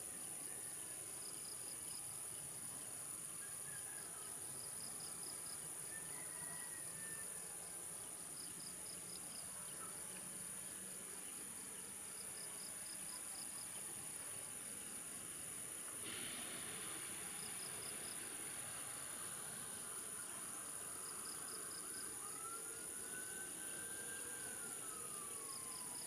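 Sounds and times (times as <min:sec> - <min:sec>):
insects chirping in trills: 0:00.1 - 0:26.0
steady high-pitched whine: 0:15.8 - 0:26.0.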